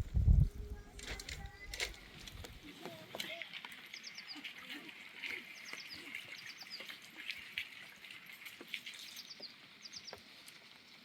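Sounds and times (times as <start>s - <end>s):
scattered clicks: 0.9s - 2.6s
small bird singing: 3.8s - 4.5s, 5.3s - 6.9s, 9.0s - 10.2s.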